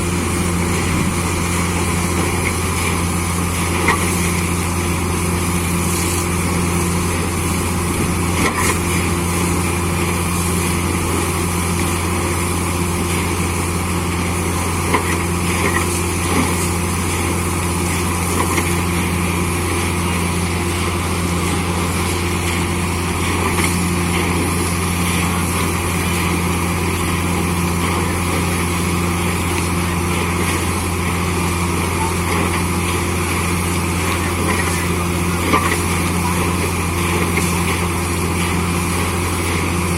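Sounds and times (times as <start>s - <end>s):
drilling rig machine din: 0.0s - 11.2s.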